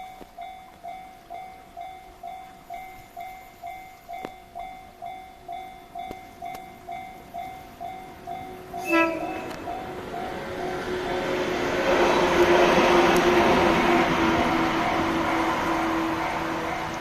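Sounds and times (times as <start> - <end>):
electric train approaching: 0.0 - 17.0
level-crossing warning bell dinging: 0.0 - 17.0
train horn blast: 8.8 - 10.0.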